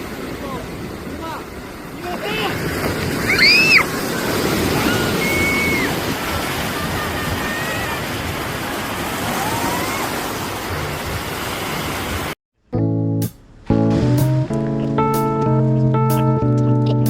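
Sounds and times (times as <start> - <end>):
surf breaking on a beach: 0.0 - 12.4.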